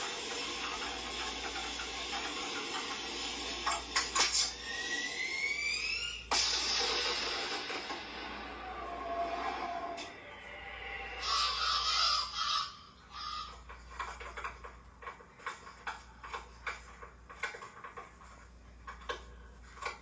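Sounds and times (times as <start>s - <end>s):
cartoon hissing rush: 0.0s - 12.8s.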